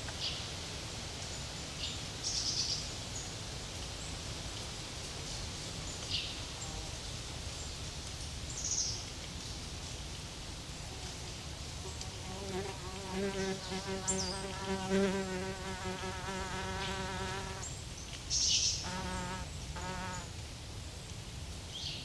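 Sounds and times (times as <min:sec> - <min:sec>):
steady low rumble and hiss: 0:00.0 - 0:22.0
small birds chirping: 0:11.8 - 0:20.3.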